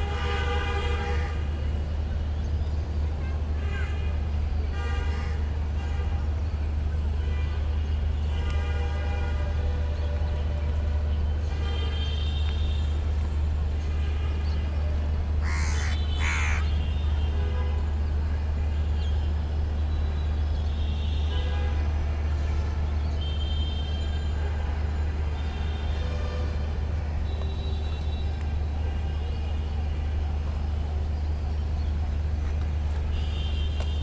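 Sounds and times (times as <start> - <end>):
low rumble of vehicles: 0.0 - 34.0
crow cawing: 15.4 - 16.8.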